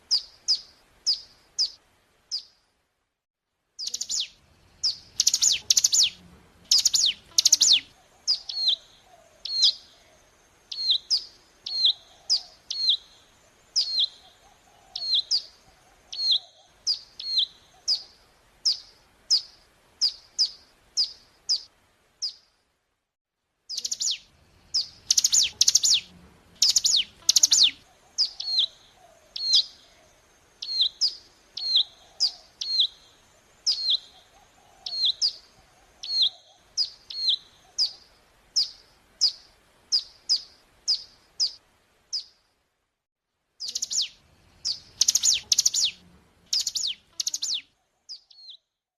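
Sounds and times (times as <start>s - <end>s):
bird chirping short high calls: 3.8s - 8.8s, 24.8s - 28.8s, 43.6s - 48.7s.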